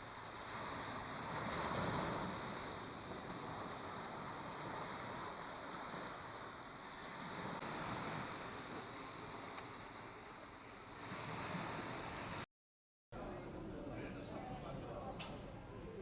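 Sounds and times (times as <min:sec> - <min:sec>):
sea waves: 0:00.0 - 0:12.5
wind: 0:00.0 - 0:12.5, 0:13.1 - 0:16.0.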